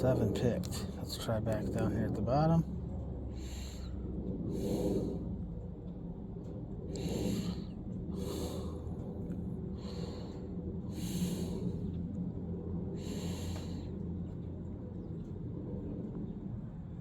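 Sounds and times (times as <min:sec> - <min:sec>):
steady low hum: 0:00.0 - 0:17.0
person breathing sharply through nose: 0:03.4 - 0:05.3, 0:06.9 - 0:11.9, 0:13.0 - 0:14.0.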